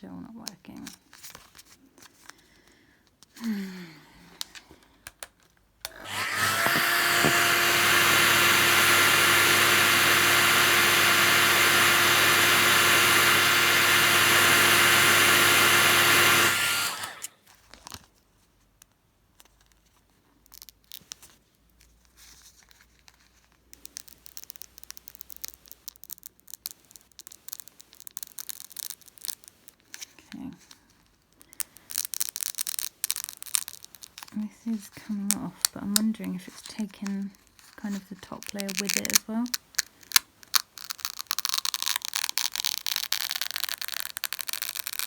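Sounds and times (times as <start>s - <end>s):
paper rustling: 0.8s - 2.6s
hairdryer switch click: 5.9s - 13.0s
hairdryer blowing: 5.9s - 17.3s.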